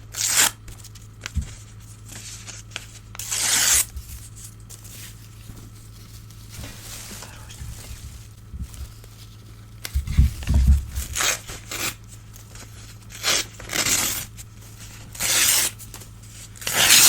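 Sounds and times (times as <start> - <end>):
paper crackling: 0.6 - 17.0
newspaper ripping: 10.9 - 17.0.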